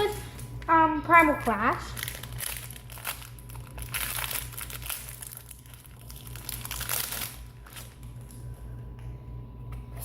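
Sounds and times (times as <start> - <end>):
foil wrapper crinkling: 1.2 - 8.5.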